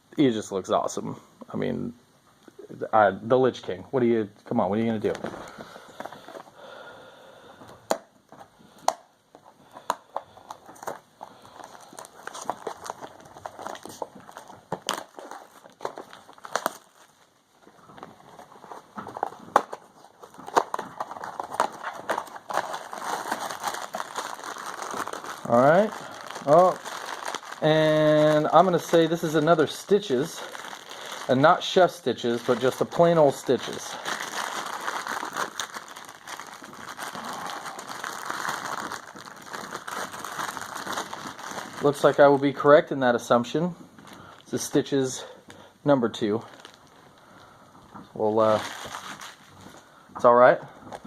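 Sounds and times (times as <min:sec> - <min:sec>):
packaging crinkling and rustling: 0:04.8 - 0:06.6, 0:07.7 - 0:43.4, 0:46.2 - 0:49.9
cardboard and plastic wrapping crackling: 0:07.9 - 0:42.8, 0:46.2 - 0:47.2, 0:48.2 - 0:51.0.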